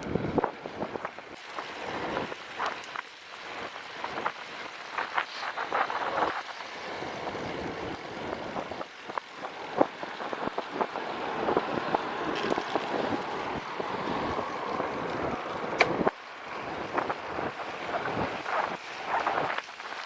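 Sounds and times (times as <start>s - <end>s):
wind noise on microphone: 0.0s - 20.0s
bicycle clicks and knocks: 11.9s - 13.4s, 15.0s - 16.2s.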